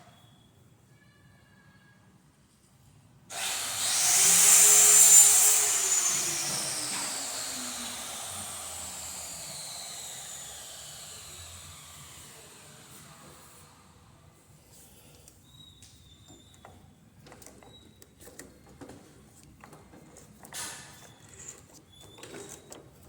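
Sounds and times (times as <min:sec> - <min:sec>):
table saw whine: 0:03.3 - 0:14.2.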